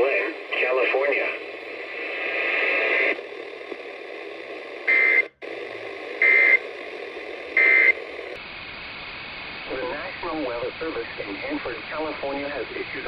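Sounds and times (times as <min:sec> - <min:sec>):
radio hiss: 0:00.0 - 0:13.0.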